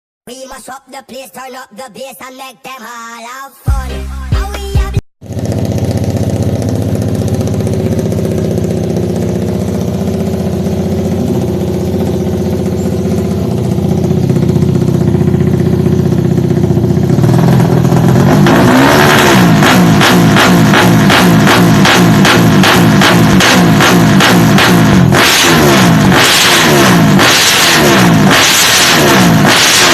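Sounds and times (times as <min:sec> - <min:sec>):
motorcycle engine idling: 0:05.2 - 0:18.9.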